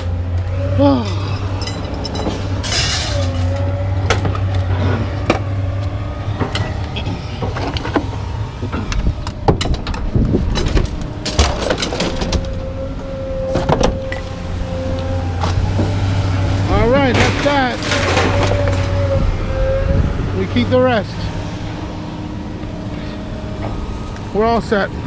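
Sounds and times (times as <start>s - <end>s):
engine hum: 0.0s - 25.0s
scrap metal clanking: 1.0s - 5.5s, 16.7s - 19.3s.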